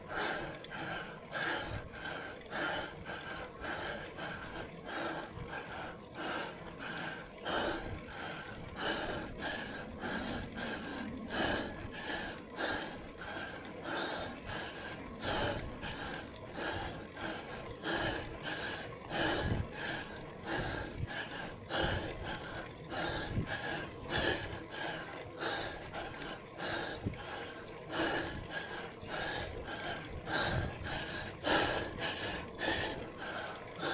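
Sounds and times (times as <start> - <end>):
person breathing hard: 0.0 - 33.9.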